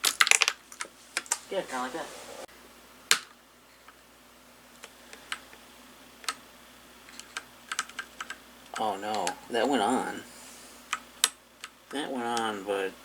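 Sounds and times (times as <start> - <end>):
keycaps clicking onto keyboard: 7.1 - 9.4.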